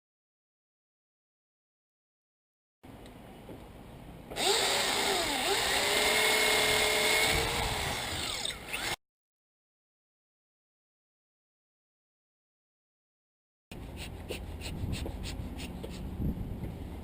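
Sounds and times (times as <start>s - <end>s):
power drill running: 4.4s - 9.0s.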